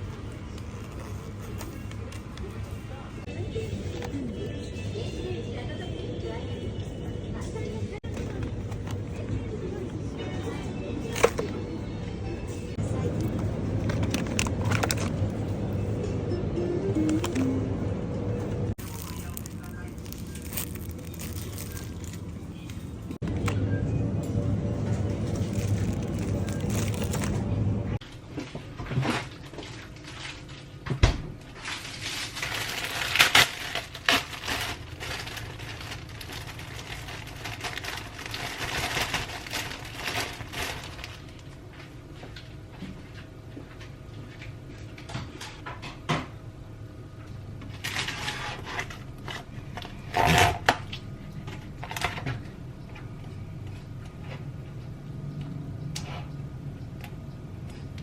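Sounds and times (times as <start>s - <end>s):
rustling: 18.8s - 23.2s, 25.0s - 27.6s.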